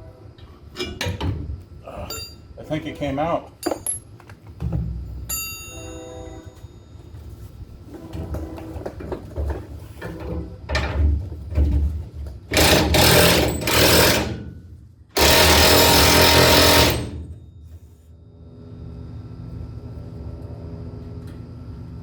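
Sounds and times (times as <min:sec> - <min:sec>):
impact wrench running: 0:12.5 - 0:14.4, 0:15.2 - 0:17.2.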